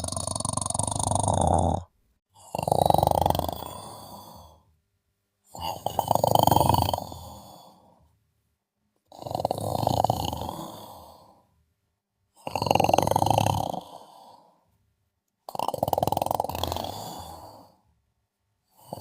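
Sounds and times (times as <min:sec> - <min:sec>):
buzzing snores: 0:00.0 - 0:04.7, 0:05.5 - 0:07.9, 0:09.1 - 0:11.5, 0:12.4 - 0:14.6, 0:15.5 - 0:17.9, 0:18.7 - 0:19.0.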